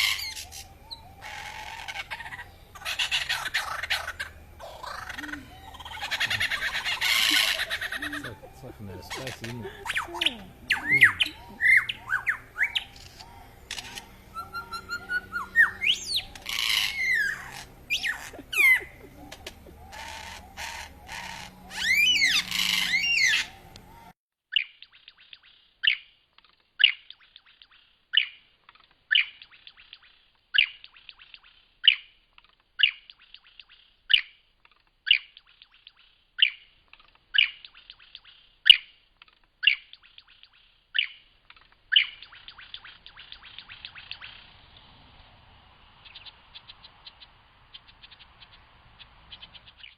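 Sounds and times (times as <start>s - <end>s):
lyrebird singing: 0.0s - 24.7s, 37.3s - 38.8s, 39.6s - 44.6s.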